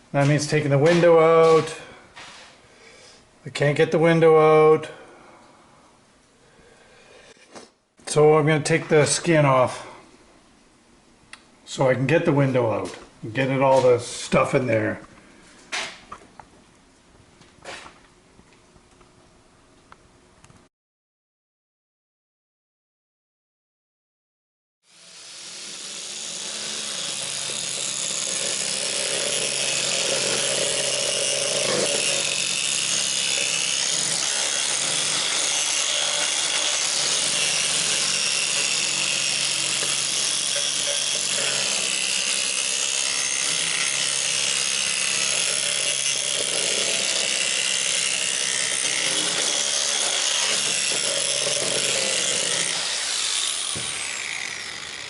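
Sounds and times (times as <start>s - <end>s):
power tool grinding sheet metal: 24.8s - 55.0s.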